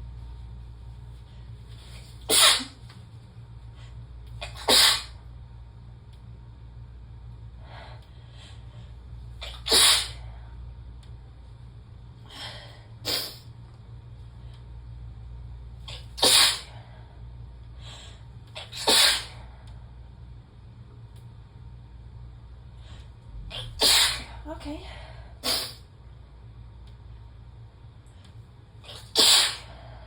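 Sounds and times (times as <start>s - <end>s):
woman sneezing: 2.3s - 2.8s, 4.4s - 5.2s, 9.4s - 10.2s, 15.9s - 16.7s, 18.6s - 19.4s, 23.5s - 24.4s, 25.4s - 25.8s, 28.9s - 29.7s.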